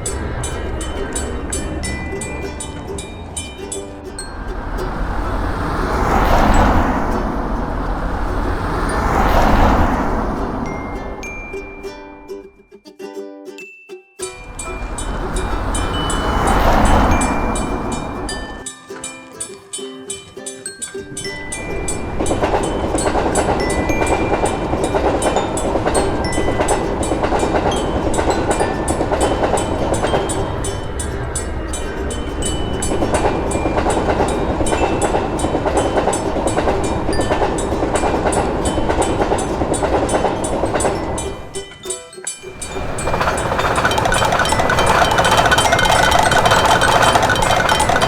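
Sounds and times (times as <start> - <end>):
train wheels rumbling on rails: 0.0 - 12.2, 14.4 - 18.6, 21.0 - 41.6, 42.5 - 48.0
plucked-string melody: 0.0 - 48.0
high ticking beat: 42.5 - 48.0.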